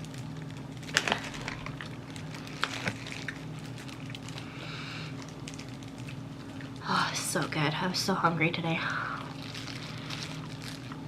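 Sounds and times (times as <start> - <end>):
crunching fried chicken: 0.0 - 6.9, 9.3 - 11.0
steady low hum: 0.0 - 11.0
soft wet chewing: 1.0 - 6.8.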